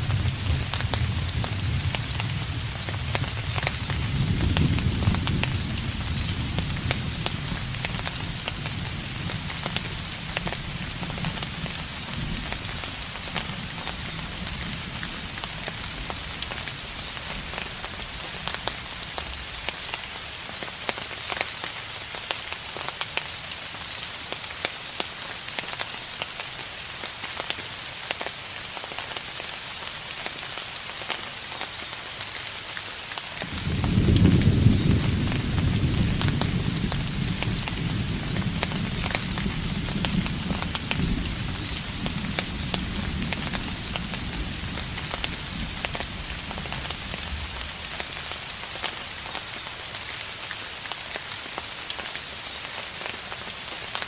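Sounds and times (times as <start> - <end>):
distant thunder rumble: 0.0 - 16.7, 33.4 - 48.0
steady rain falling: 0.0 - 54.0.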